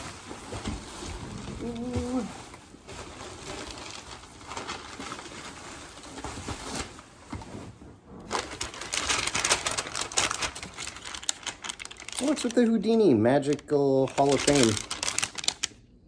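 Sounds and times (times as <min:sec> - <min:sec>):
paper and packing material rustling: 0:00.0 - 0:15.8.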